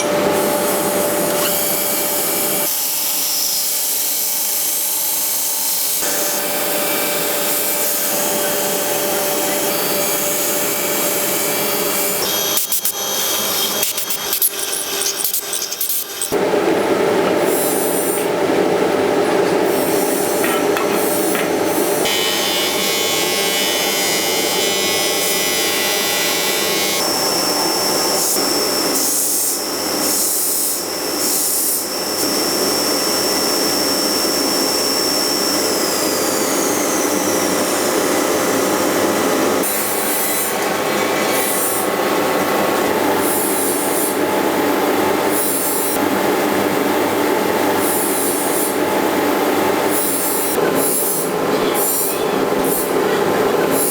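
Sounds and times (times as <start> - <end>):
tools grinding steel blade: 0.0 - 6.5, 7.4 - 16.4.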